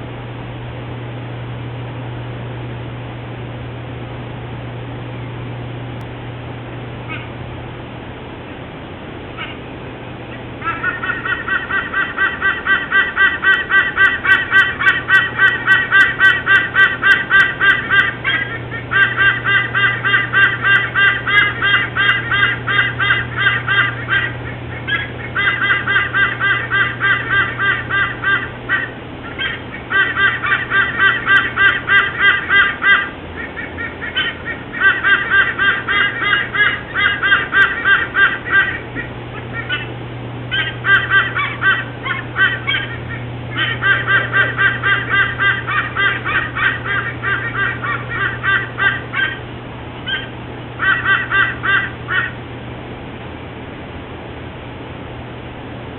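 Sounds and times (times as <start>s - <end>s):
low hum: 0.0s - 55.9s
eagle honking calls: 7.0s - 7.4s, 9.3s - 52.4s.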